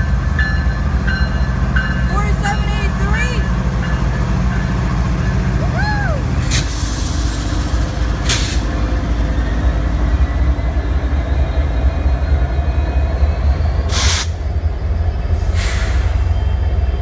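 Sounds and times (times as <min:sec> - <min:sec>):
diesel locomotive rumble: 0:00.0 - 0:17.0
air brake hisses: 0:06.4 - 0:08.8, 0:13.9 - 0:14.4, 0:15.4 - 0:16.5.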